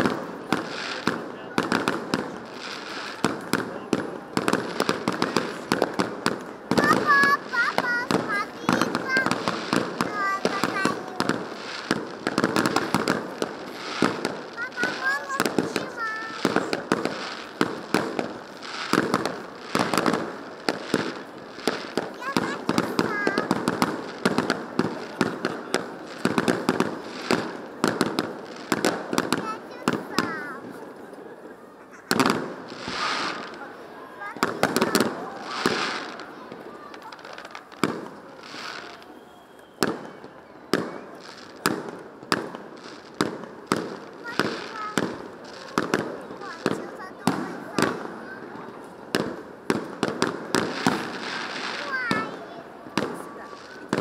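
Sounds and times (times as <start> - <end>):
fireworks bursting with sharp bangs: 0.0 - 54.0
fireworks crackling: 0.0 - 54.0.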